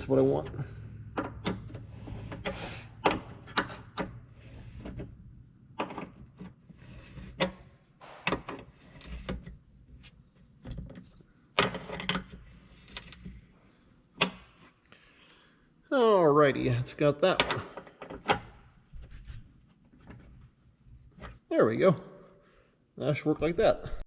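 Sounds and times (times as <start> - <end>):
tools and parts knocking: 0.4 - 5.1, 5.8 - 6.6, 7.2 - 9.4.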